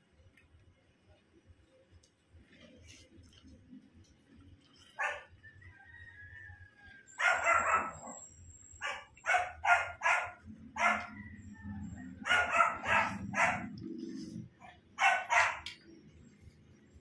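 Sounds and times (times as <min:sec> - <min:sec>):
dog barking: 0:04.9 - 0:05.4, 0:07.2 - 0:08.2, 0:08.8 - 0:11.4, 0:12.0 - 0:14.0, 0:14.6 - 0:15.7.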